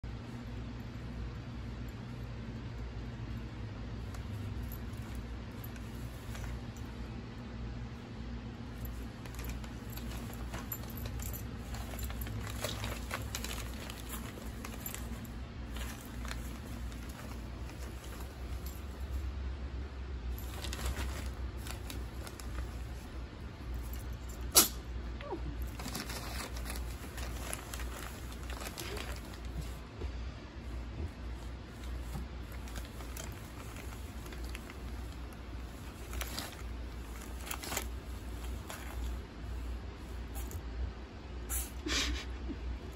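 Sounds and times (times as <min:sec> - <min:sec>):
low steady rumble: 0:00.0 - 0:42.9
steady low hum: 0:00.0 - 0:42.9
paper crinkling and rustling: 0:04.0 - 0:07.0, 0:08.7 - 0:19.3, 0:20.3 - 0:24.4, 0:25.6 - 0:30.0, 0:30.6 - 0:40.6.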